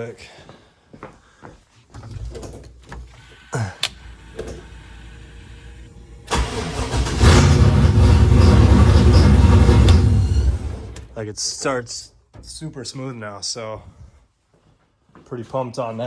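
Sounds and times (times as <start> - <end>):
car engine cranking and idling: 2.0 - 11.2.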